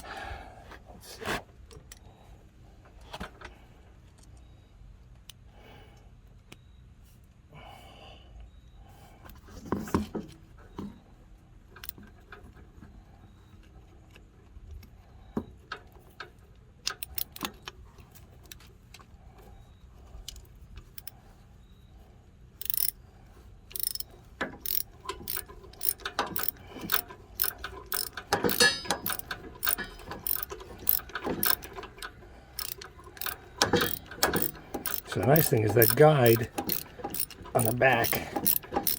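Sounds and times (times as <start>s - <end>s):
metal clicking and clinking: 16.9s - 17.5s, 22.6s - 22.9s, 23.7s - 38.9s.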